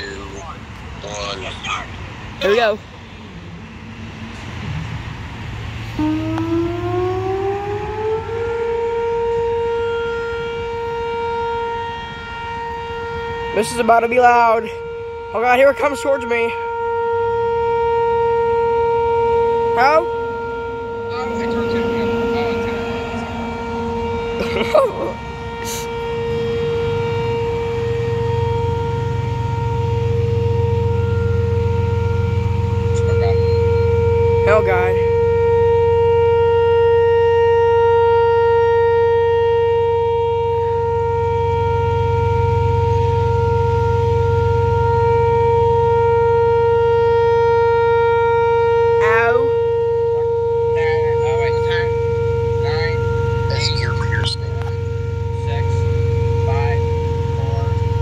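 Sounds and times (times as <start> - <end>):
low rumble: 0.0 - 6.9
warning siren steady tone: 0.0 - 58.0
warning siren winding up: 5.8 - 13.9, 48.9 - 58.0.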